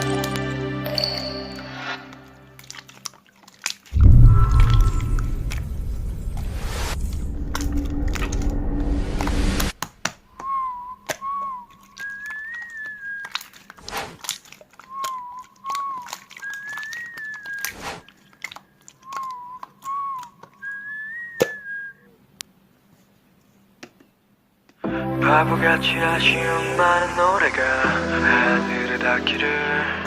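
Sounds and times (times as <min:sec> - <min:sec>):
person whistling a tune: 0:10.3 - 0:13.4, 0:14.9 - 0:17.7, 0:19.0 - 0:22.1.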